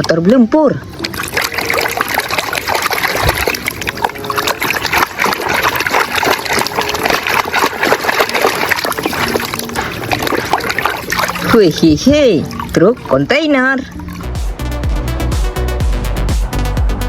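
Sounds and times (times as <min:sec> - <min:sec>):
running water splashing: 0:00.8 - 0:15.2.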